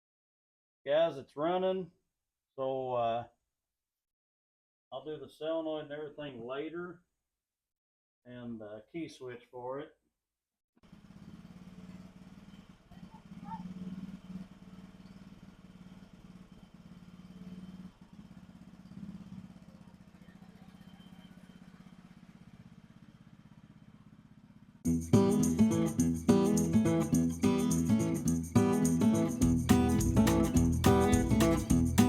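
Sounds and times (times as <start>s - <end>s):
lawn mower engine droning: 10.8s - 32.0s
guitar music: 24.9s - 32.0s.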